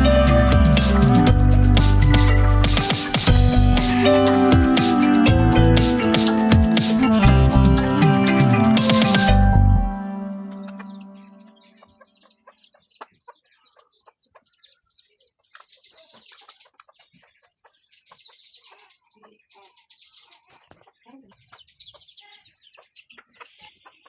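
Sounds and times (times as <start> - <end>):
faint high peeping: 0.0 - 24.0
chickens clucking: 10.0 - 14.9
chickens pecking taps: 20.4 - 22.0.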